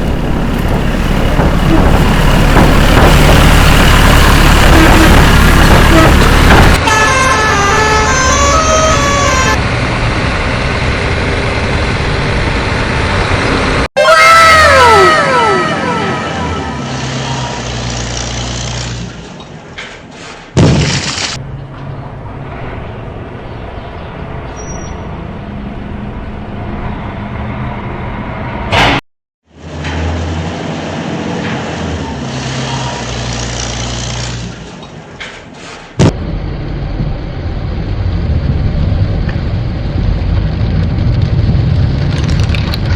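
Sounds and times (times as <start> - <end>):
truck engine rumbling: 0.0 - 29.0, 29.6 - 42.9
horn-like notes stepping in pitch: 4.6 - 9.6, 14.0 - 17.5.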